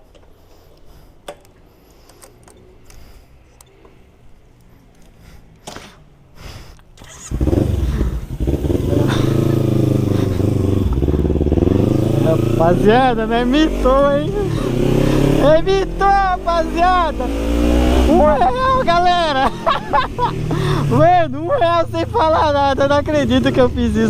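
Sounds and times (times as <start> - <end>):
motorcycle engine running: 7.2 - 21.0.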